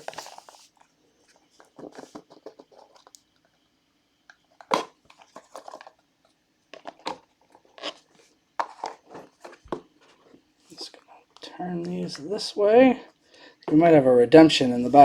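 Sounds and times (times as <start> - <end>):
packaging crinkling and rustling: 0.0 - 3.5, 4.6 - 11.1.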